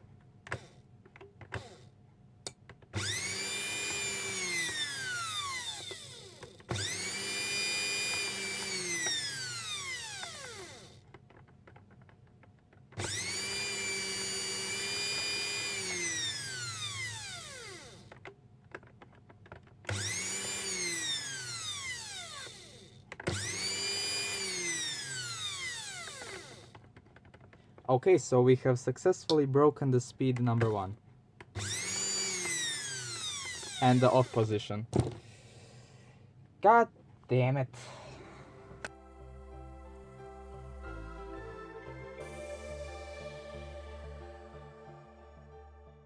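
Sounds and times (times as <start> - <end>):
blender motor whining: 1.5 - 1.9, 2.9 - 11.0, 13.0 - 18.2, 19.9 - 26.8, 31.5 - 35.8.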